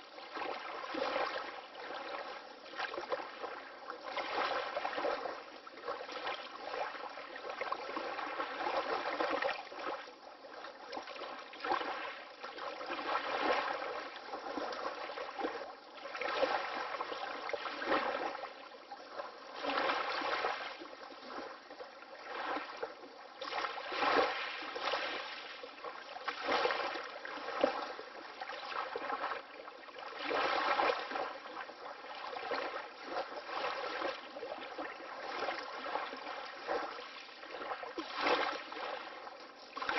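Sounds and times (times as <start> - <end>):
water lapping in small waves: 0.0 - 39.9.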